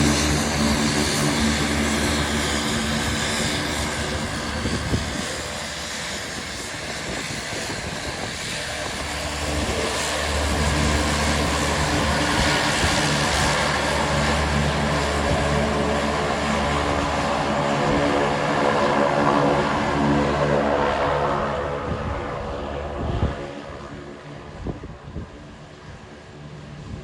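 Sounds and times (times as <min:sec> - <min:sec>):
turboprop engines droning: 0:00.0 - 0:27.0.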